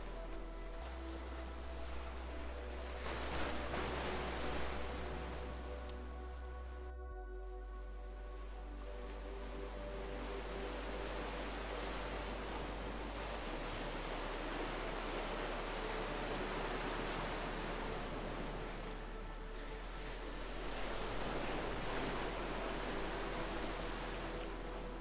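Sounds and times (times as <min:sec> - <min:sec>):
ocean waves washing in: 0:00.0 - 0:05.9, 0:08.8 - 0:25.0
ambient music: 0:00.0 - 0:25.0.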